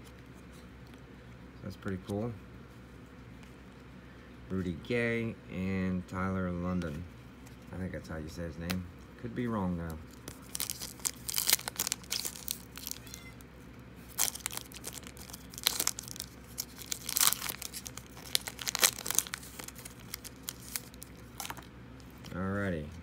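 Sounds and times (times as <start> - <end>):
cards rustling: 9.4 - 13.2, 14.0 - 22.8
plastic wrapper tearing and crinkling: 10.1 - 13.2, 14.0 - 22.2.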